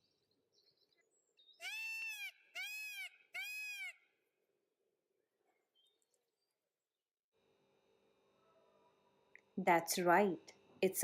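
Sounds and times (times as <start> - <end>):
peacock calling: 1.6 - 4.2.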